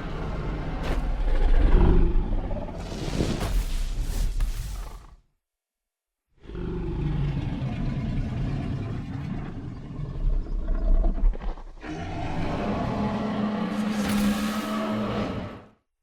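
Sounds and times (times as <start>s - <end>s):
deep rumbling creature growl: 0.0s - 3.3s, 6.4s - 15.7s.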